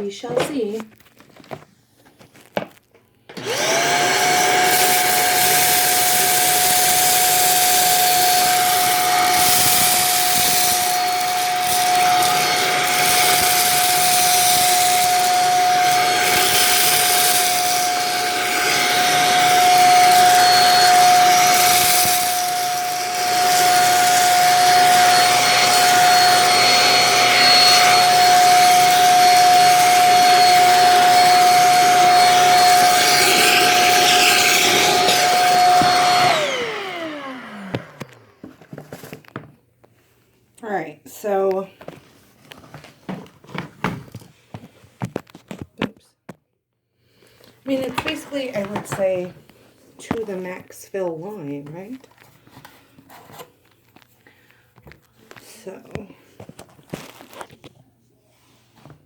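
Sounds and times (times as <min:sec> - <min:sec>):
vacuum cleaner motor whine: 0:03.3 - 0:39.1
vacuum sucking up rice: 0:03.4 - 0:38.3.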